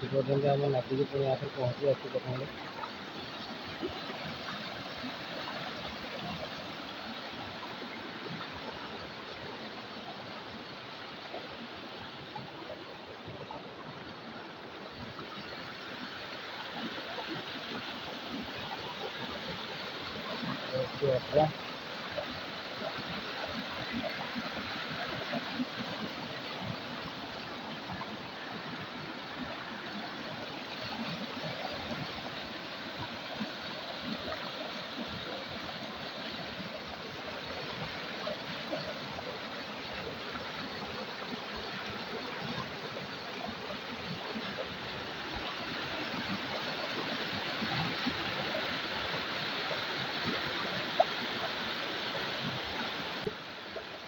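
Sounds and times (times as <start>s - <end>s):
river flowing: 0.0s - 54.0s.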